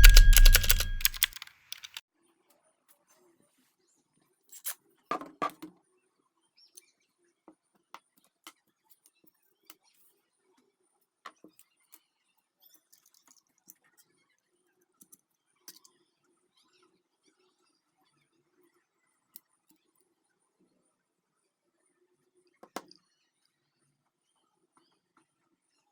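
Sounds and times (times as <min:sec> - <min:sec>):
small hard objects clicking: 0:00.0 - 0:02.0.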